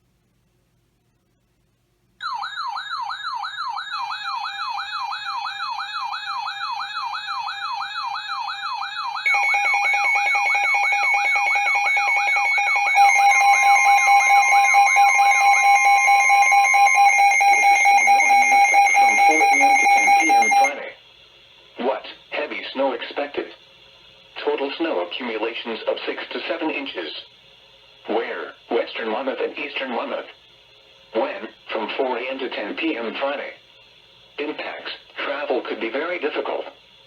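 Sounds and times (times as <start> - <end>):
electronic warbling siren: 2.2 - 20.8
steady alarm tones: 2.2 - 20.9.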